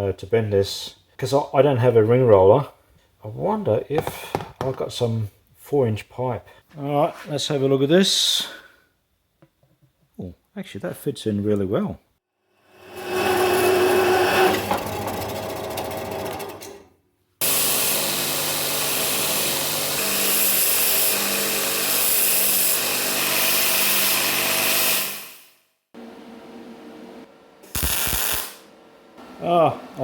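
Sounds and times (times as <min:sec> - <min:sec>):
handheld power tool running: 0:17.4 - 0:25.2.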